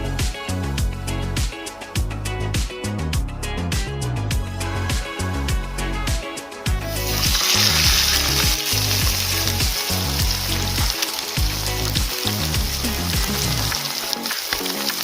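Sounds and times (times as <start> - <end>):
background music: 0.0 - 15.0
food sizzling in a hot pan: 6.9 - 15.0.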